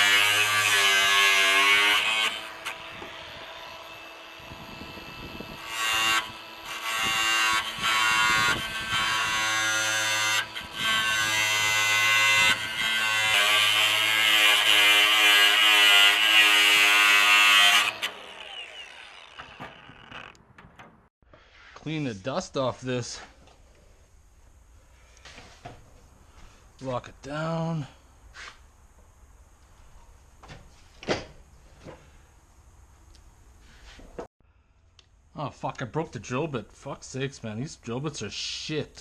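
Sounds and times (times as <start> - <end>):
power tool motor whining: 0.0 - 20.6.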